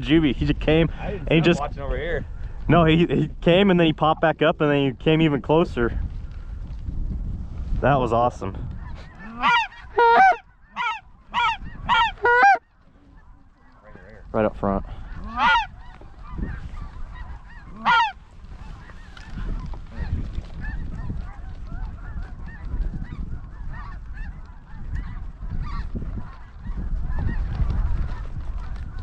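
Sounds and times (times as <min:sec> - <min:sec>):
wind rumble on microphone: 0:00.0 - 0:29.0
geese chattering: 0:08.8 - 0:29.0
loud goose honks: 0:09.1 - 0:12.7, 0:15.1 - 0:18.2.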